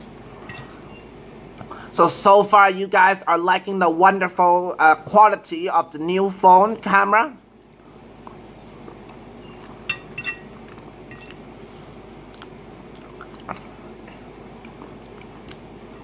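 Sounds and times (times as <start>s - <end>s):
steady background hiss: 0.0s - 16.0s
mouth clicks and smacks: 12.3s - 13.7s, 14.5s - 15.6s
close-up chewing: 12.3s - 15.7s.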